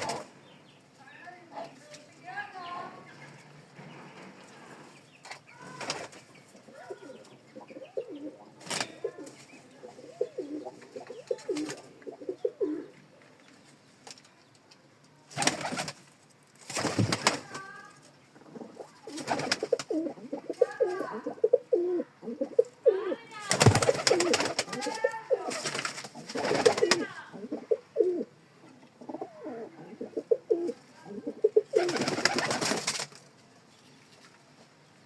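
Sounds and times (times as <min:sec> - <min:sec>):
pigeons cooing: 0:05.7 - 0:13.0, 0:18.3 - 0:32.8.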